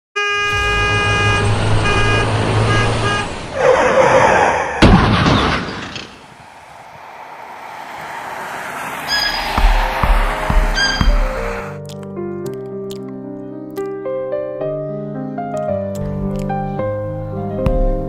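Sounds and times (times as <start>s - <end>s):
surge of noise: 6.0s - 11.8s.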